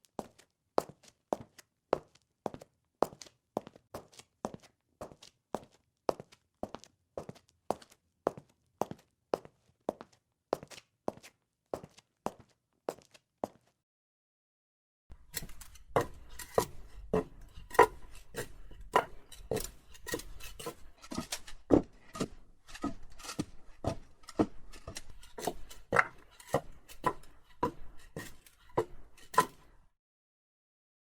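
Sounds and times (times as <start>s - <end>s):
footsteps with scuffs: 15.1s - 29.8s.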